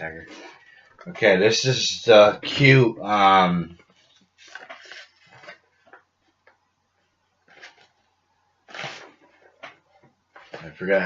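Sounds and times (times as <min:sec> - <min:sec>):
packaging rustling: 0:03.8 - 0:06.6, 0:07.4 - 0:10.8.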